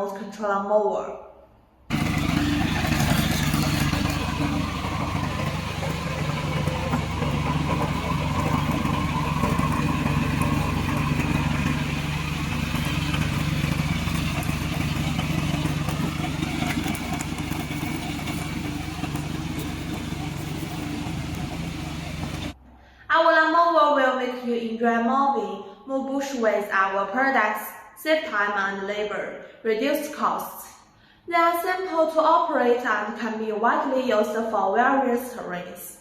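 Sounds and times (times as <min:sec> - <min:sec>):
lawn mower engine running: 0:01.9 - 0:22.6.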